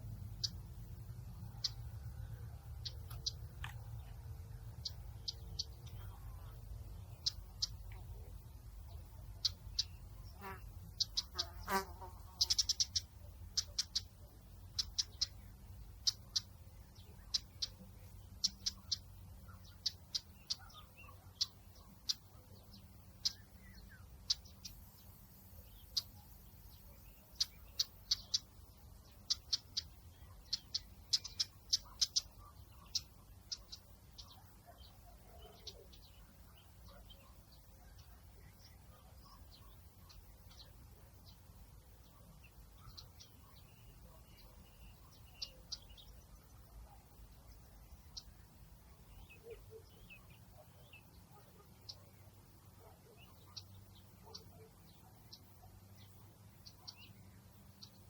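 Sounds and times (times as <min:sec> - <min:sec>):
low outdoor rumble: 0:00.0 - 0:11.3
small birds chirping: 0:00.0 - 0:58.0.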